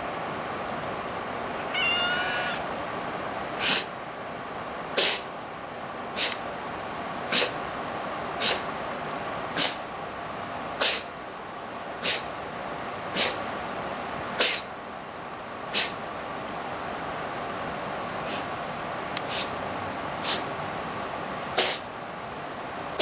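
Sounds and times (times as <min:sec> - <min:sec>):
cat squeak: 0:01.6 - 0:02.6
cat hacking coughs: 0:14.4 - 0:14.7, 0:21.6 - 0:21.9.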